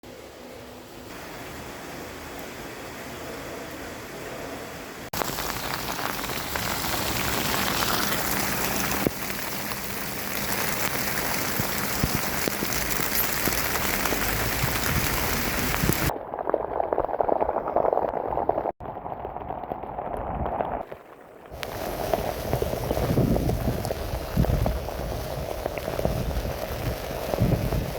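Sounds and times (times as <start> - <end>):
heavy rain falling: 1.1 - 16.1, 21.5 - 27.9.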